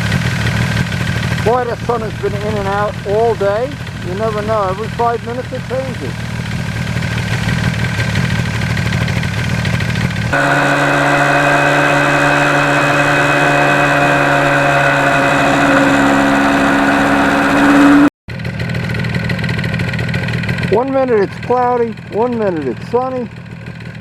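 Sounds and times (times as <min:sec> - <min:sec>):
motorcycle engine running: 0:06.2 - 0:20.7.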